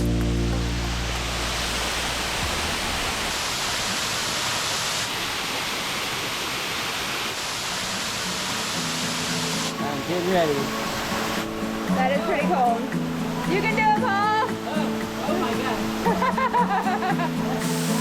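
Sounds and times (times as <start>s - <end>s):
background music: 0.0s - 2.0s, 9.7s - 18.0s
waterfall pouring into pool: 0.0s - 18.0s.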